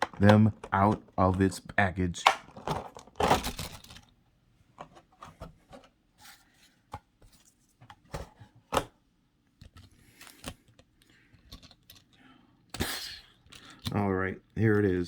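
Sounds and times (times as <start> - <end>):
plastic toys clicking and knocking: 0.0 - 1.4, 2.2 - 4.2.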